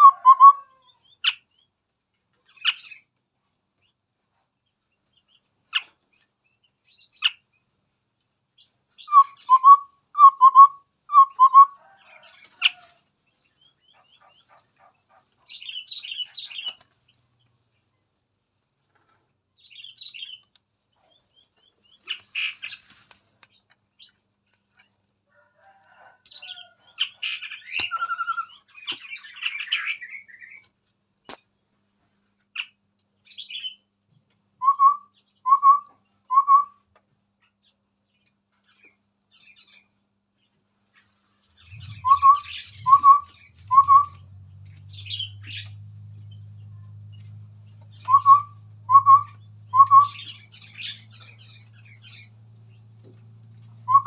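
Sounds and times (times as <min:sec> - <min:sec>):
bird chattering notes: 0:41.6 - 0:44.2
bird short rising whistles: 0:41.8 - 0:44.3.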